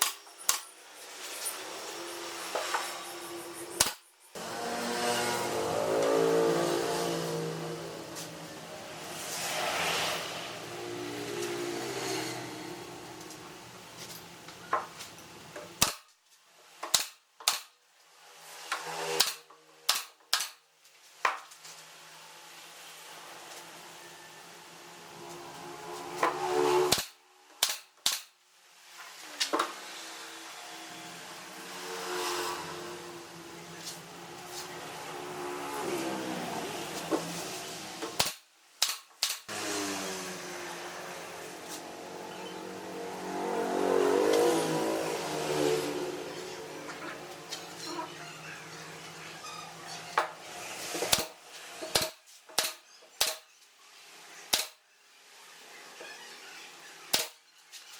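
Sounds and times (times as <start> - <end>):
electric power tool motor humming: 4.4 - 7.8, 39.5 - 42.1.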